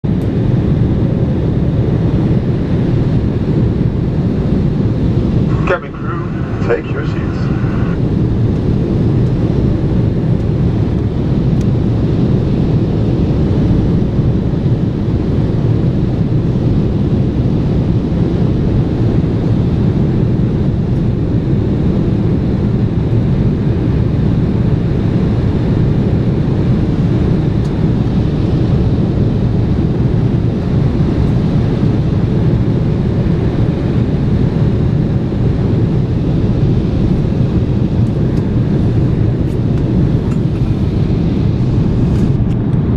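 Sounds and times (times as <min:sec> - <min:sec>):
airliner engine drone: 0:00.1 - 0:42.9
rushing air: 0:05.1 - 0:08.3.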